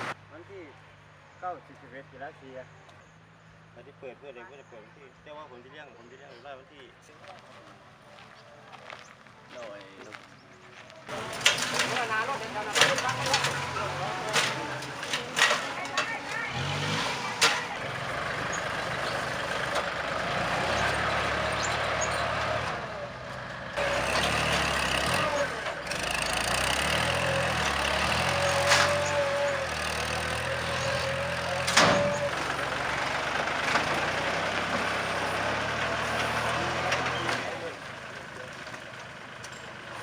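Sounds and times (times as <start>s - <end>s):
heavy engine running: 11.1s - 40.0s.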